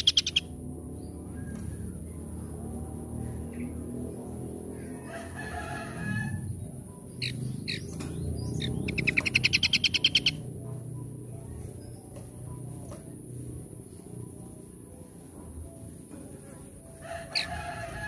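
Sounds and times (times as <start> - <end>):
songbird trilling: 0.0 - 0.6, 6.6 - 10.6.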